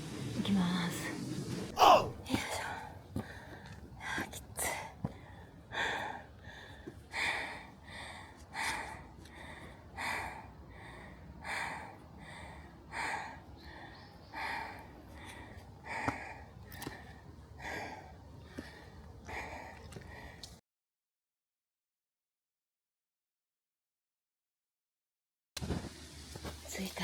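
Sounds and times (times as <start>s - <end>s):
person breathing hard: 1.8s - 20.6s.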